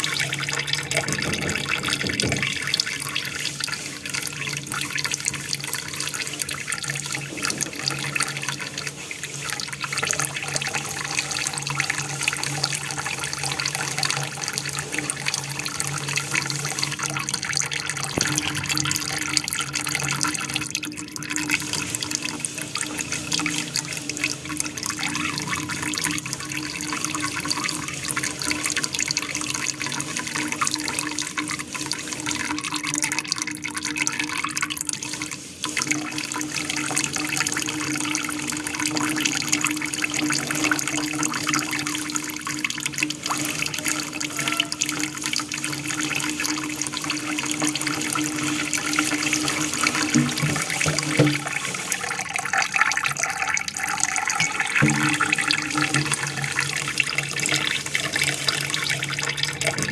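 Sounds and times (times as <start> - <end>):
aquarium waterfall splashing: 0.0 - 59.9.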